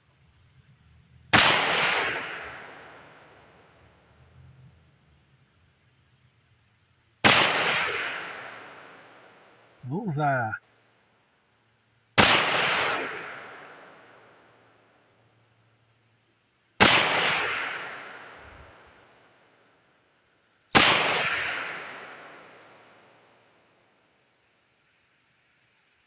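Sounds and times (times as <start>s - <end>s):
pistol shots with long echo: 1.4s - 3.3s, 7.3s - 9.2s, 12.2s - 14.4s, 16.8s - 18.8s, 20.8s - 22.9s.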